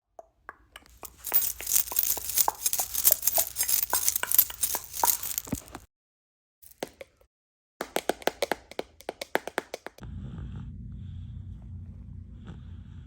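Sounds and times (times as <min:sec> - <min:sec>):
rustling and crinkling: 0:00.9 - 0:05.9.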